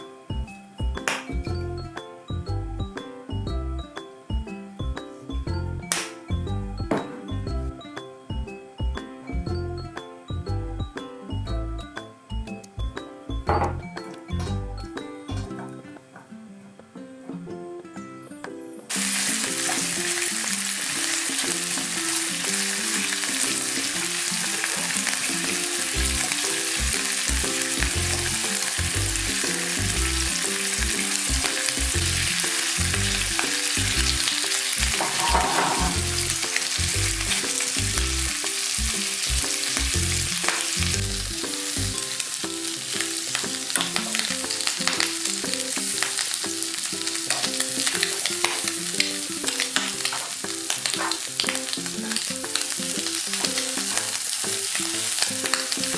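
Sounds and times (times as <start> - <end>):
background music: 0.0 - 55.9
food sizzling in frying pan: 18.5 - 55.9.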